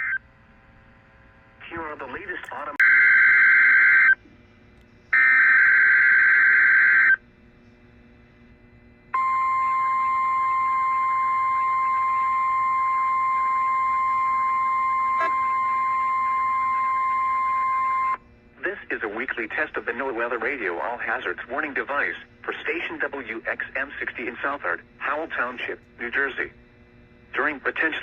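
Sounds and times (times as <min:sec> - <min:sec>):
steady warning alarm tone: 0:02.1 - 0:04.2, 0:05.1 - 0:07.2, 0:09.1 - 0:18.2.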